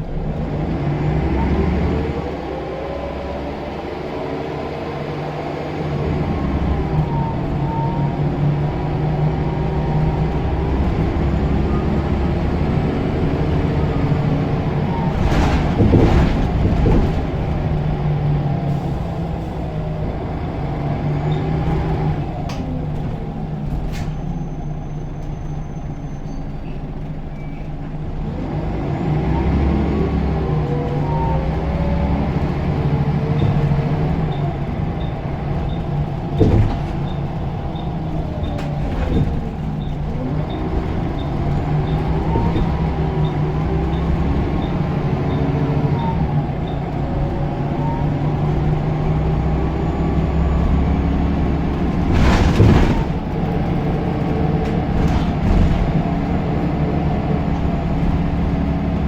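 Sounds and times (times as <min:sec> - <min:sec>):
diesel bus engine under load: 0:00.0 - 0:59.0
thump: 0:15.1 - 0:17.5, 0:36.4 - 0:37.2, 0:52.0 - 0:53.3, 0:54.6 - 0:56.2.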